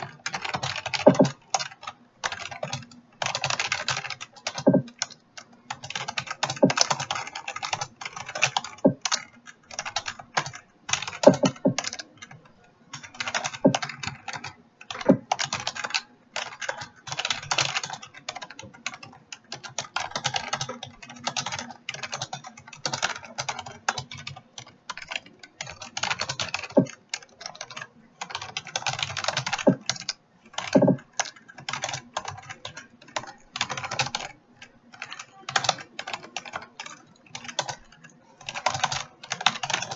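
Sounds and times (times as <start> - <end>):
keyboard key clicks: 3.5 - 5.1, 9.8 - 12.3, 29.0 - 30.0, 30.6 - 32.5.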